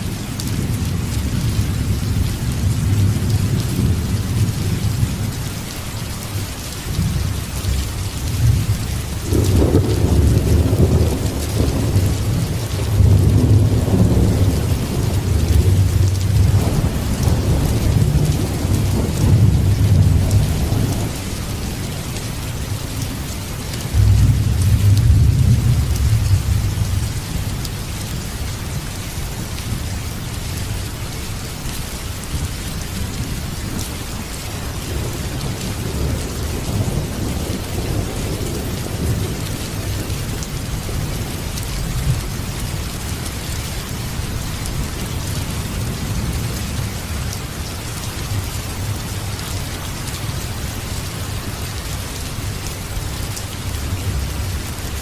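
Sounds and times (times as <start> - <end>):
steady rain: 0.0 - 55.0
thunder rumbling: 8.3 - 27.6, 32.3 - 43.1.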